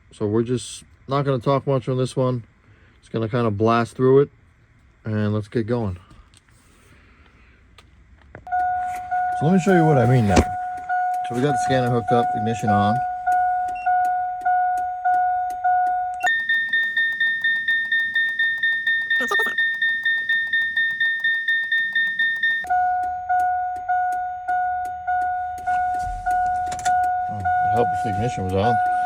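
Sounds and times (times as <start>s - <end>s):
truck cab warning chime: 8.5s - 29.0s.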